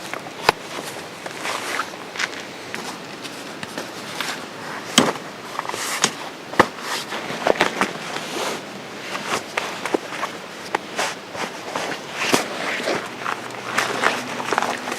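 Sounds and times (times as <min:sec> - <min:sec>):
footsteps crunching on dry ground: 0:00.0 - 0:14.9.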